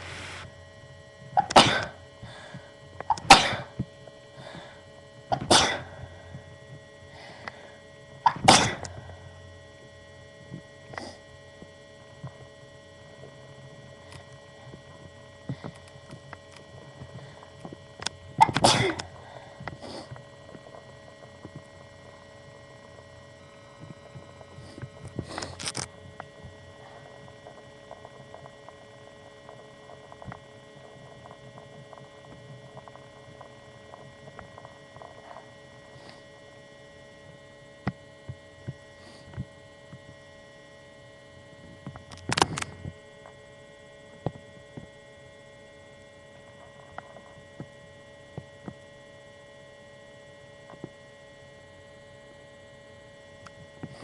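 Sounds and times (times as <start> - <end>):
steady electrical hum: 0.0 - 54.0
person sneezing: 1.4 - 2.0, 3.2 - 3.7, 5.4 - 5.9, 8.3 - 8.9, 18.5 - 19.0.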